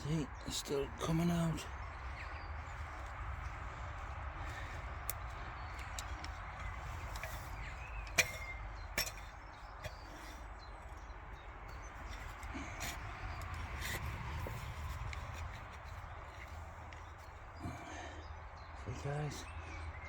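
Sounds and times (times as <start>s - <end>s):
garden fork digging soil: 4.5s - 16.6s
fork tines knocking: 6.9s - 10.4s, 11.7s - 15.5s.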